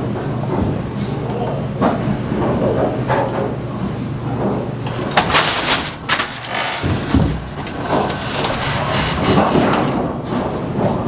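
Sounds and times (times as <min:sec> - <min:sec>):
machinery motor hum: 0:03.9 - 0:10.8.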